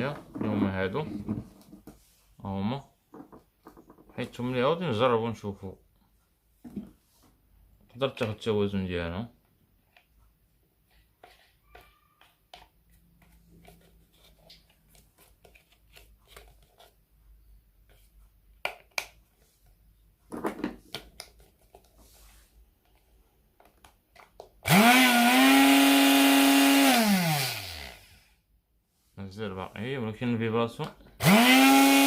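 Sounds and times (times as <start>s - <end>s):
blender motor whining: 24.6s - 28.4s, 31.2s - 32.0s.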